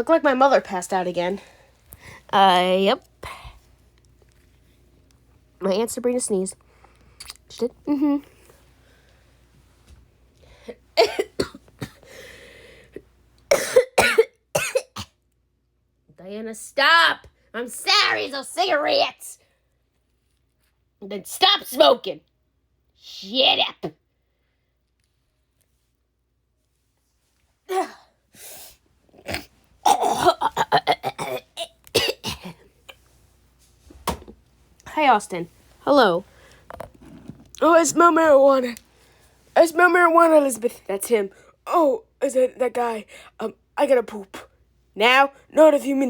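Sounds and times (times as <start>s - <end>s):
person coughing: 11.0s - 12.1s, 13.5s - 15.2s, 29.2s - 32.7s
person breathing: 12.0s - 13.0s, 36.3s - 36.7s.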